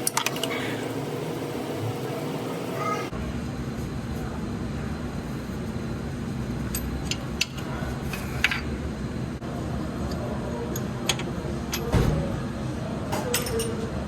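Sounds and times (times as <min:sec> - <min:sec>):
steady low hum: 0:00.0 - 0:13.1
metal tools clinking: 0:13.3 - 0:13.8.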